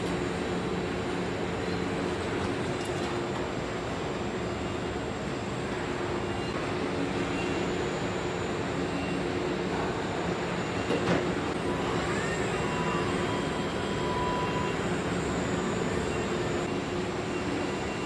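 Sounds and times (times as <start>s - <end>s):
machinery hum and rumble: 0.0s - 18.0s
machine whining tones: 6.2s - 18.0s.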